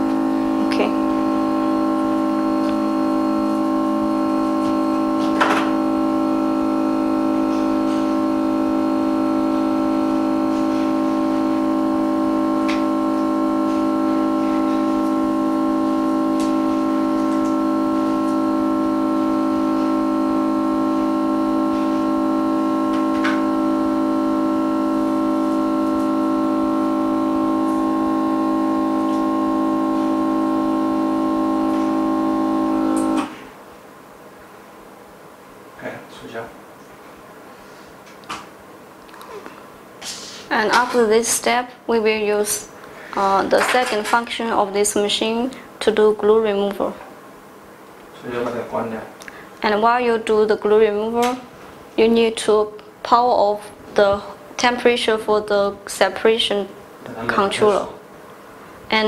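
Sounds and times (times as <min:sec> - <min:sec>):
held synthesizer chord: 0:00.0 - 0:33.4.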